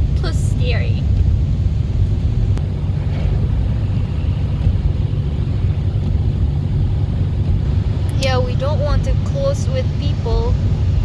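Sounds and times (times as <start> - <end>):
car engine rumble: 0.0 - 11.0
tyre noise on road: 0.0 - 11.0.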